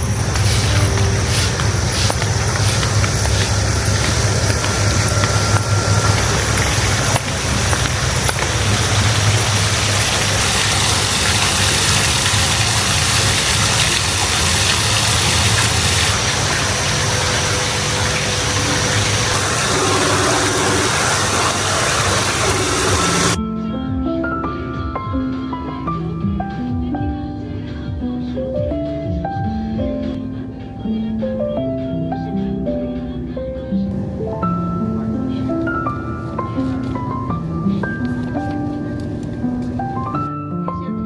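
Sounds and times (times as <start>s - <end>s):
vehicle engine running: 0.0s - 9.9s
loud even rushing noise: 0.0s - 12.3s, 13.4s - 23.4s.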